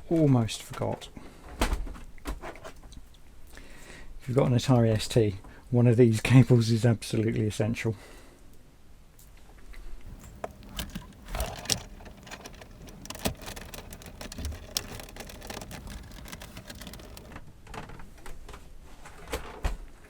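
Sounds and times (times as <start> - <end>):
cables and plugs clicking: 10.1 - 17.4.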